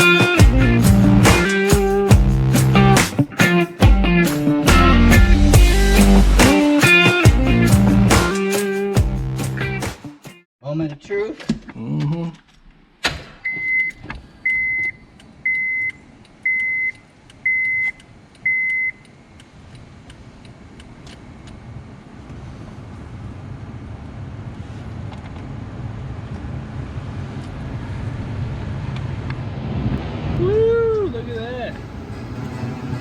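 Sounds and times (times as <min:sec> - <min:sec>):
car warning chime beeping: 0:13.5 - 0:19.1
road and engine noise: 0:14.0 - 0:33.0.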